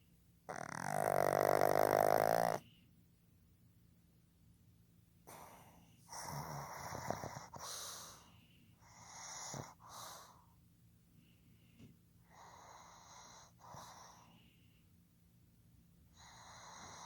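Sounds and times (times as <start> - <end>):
dog snoring: 0.5 - 2.7, 5.3 - 8.2, 8.8 - 10.4, 12.2 - 14.4, 16.1 - 17.0.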